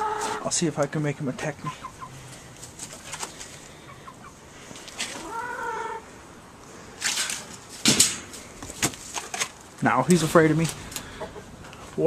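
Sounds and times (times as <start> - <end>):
chicken calling: 0.0 - 0.6, 1.5 - 6.2
rustling and scuffling: 2.3 - 3.8, 4.7 - 5.3, 7.0 - 12.0.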